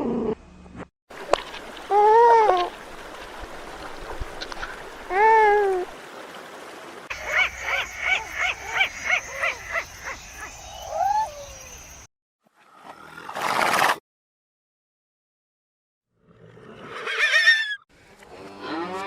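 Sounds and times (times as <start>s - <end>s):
animal calls: 7.1s - 11.9s.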